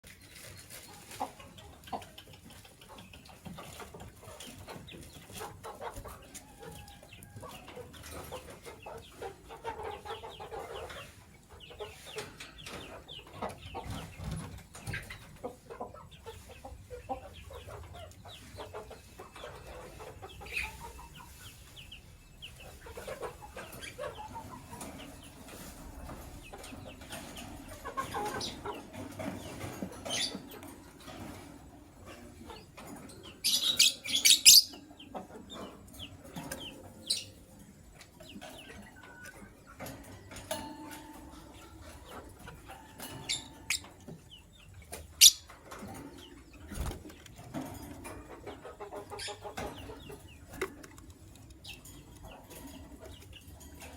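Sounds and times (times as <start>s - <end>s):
lovebirds chirping: 8.1s - 25.5s, 26.3s - 30.6s, 32.1s - 37.6s, 41.2s - 47.6s, 48.5s - 50.7s.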